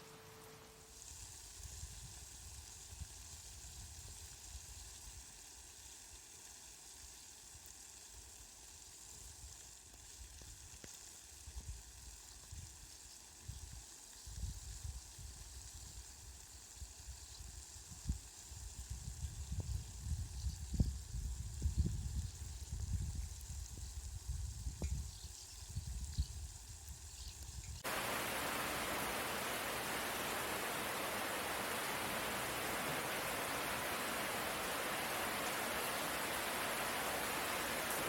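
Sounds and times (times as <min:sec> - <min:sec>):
rain falling: 0:27.8 - 0:38.0.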